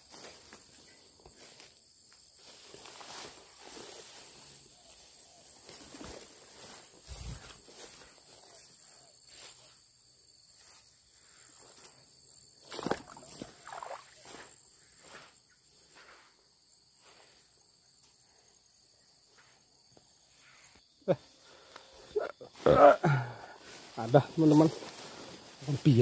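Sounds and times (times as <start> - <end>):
insects buzzing: 0.0 - 26.0
rustles in undergrowth: 0.0 - 26.0.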